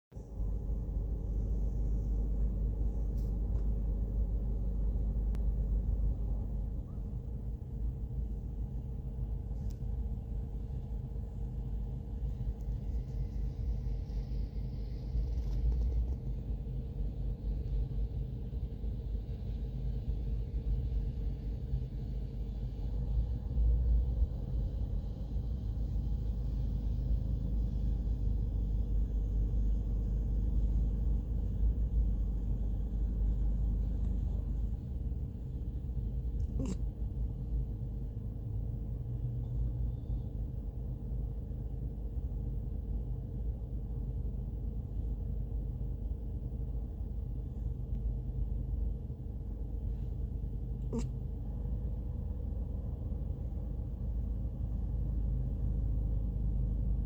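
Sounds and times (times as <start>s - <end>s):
steady low rumble: 0.1s - 57.0s
dog snoring softly: 36.3s - 37.0s, 50.8s - 51.2s.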